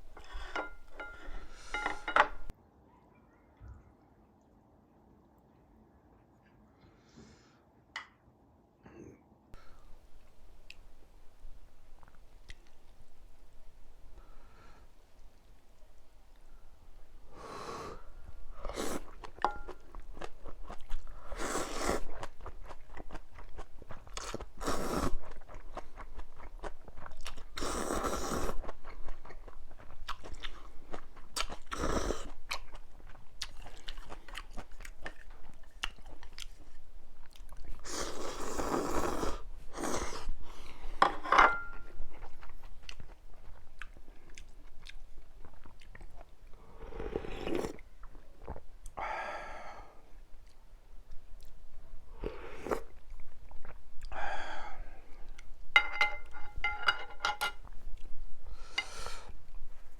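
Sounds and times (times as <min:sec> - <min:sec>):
chewing and biting noodles: 0:20.0 - 0:40.3.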